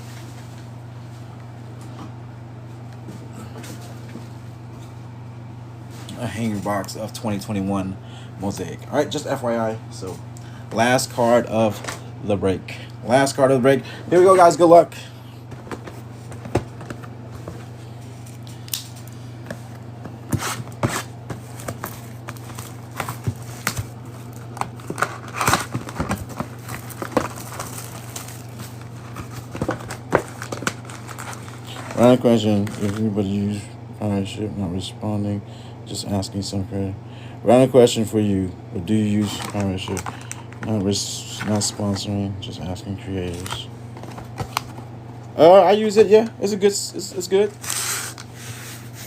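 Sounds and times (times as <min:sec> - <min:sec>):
low electrical hum: 0:00.0 - 0:49.0
card and wrapper rustling: 0:15.5 - 0:33.2, 0:39.0 - 0:42.1, 0:43.2 - 0:44.9, 0:47.3 - 0:49.0
cards clicking and tapping: 0:29.1 - 0:31.5.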